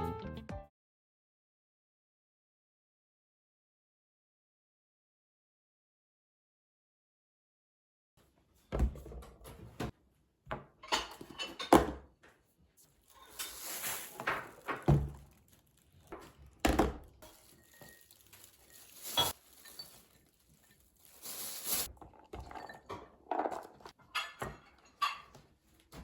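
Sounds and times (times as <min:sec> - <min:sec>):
objects knocking and clinking: 0:13.1 - 0:15.4, 0:16.1 - 0:25.3.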